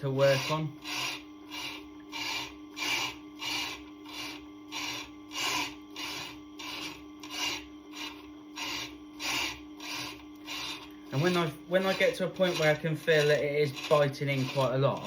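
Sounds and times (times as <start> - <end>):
machine humming: 0.0 - 15.0
truing tool scraping grinding stone: 0.0 - 15.0.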